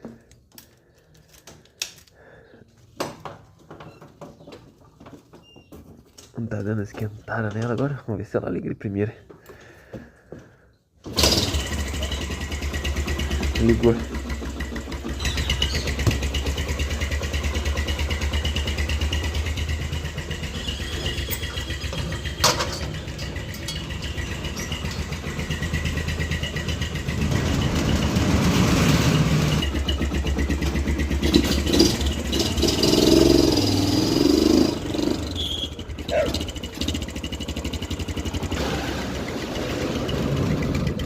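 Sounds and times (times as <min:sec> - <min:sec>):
motorcycle engine idling: 0:11.4 - 0:41.0.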